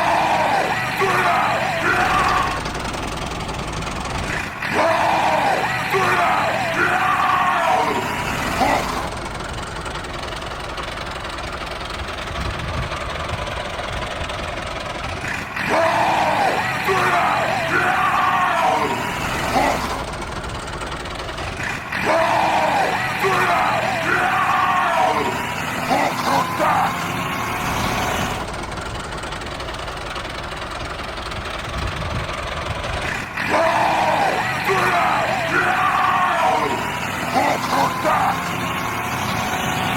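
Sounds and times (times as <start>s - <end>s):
music with yelling: 0.0s - 3.4s, 4.0s - 9.4s, 15.2s - 20.3s, 21.4s - 28.5s, 33.0s - 39.9s
small harvester motor running: 0.0s - 39.9s.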